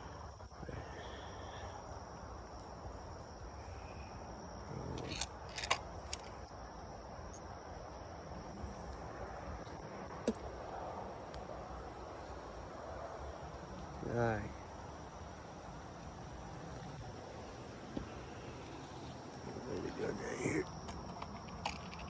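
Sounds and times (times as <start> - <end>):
insects chirring: 0.0 - 22.0.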